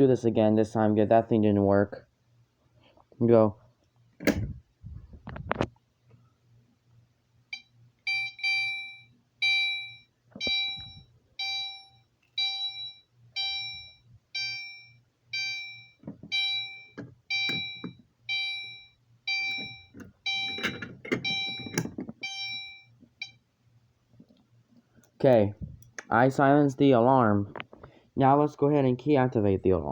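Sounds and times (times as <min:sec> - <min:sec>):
low steady hum: 0:00.0 - 0:29.9
fire alarm chime dinging: 0:07.5 - 0:23.4
knocks and rattles: 0:19.5 - 0:22.2.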